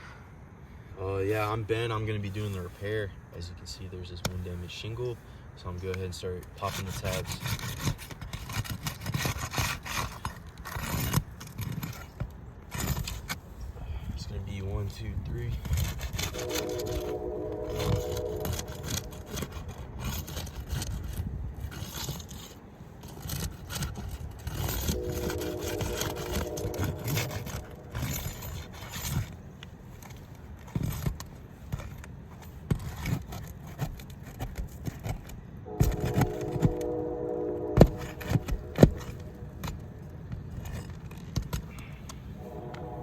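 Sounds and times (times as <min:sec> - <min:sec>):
shingles scraping and snapping: 0:05.8 - 0:13.6, 0:15.4 - 0:42.6
steady droning tone: 0:16.4 - 0:20.2, 0:24.7 - 0:29.2, 0:42.2 - 0:43.0.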